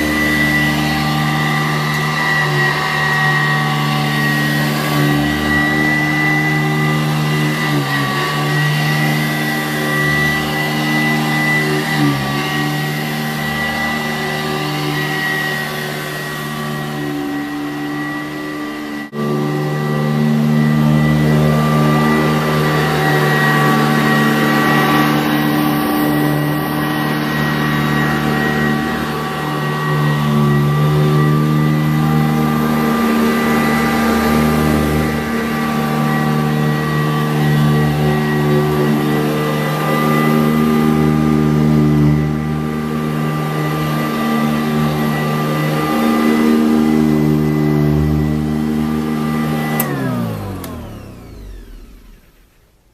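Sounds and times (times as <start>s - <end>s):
vacuum cleaner motor running: 0.0s - 52.9s.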